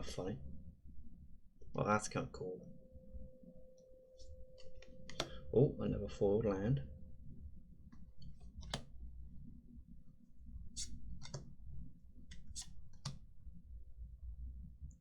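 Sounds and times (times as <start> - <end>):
cards snapping: 8.4 - 8.9, 12.3 - 13.2
papery swishes of cards: 12.3 - 12.8.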